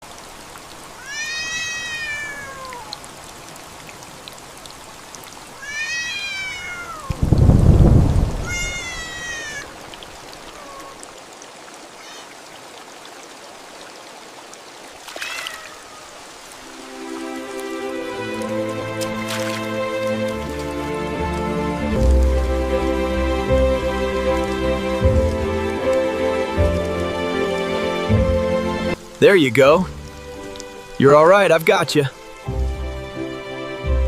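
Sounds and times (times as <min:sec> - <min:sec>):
rain hissing: 0:00.0 - 0:34.0
cat meowing: 0:01.0 - 0:03.0, 0:05.6 - 0:07.2, 0:08.4 - 0:09.8, 0:10.4 - 0:11.0, 0:12.0 - 0:12.4, 0:15.2 - 0:16.2
thunder rumble: 0:07.0 - 0:09.7.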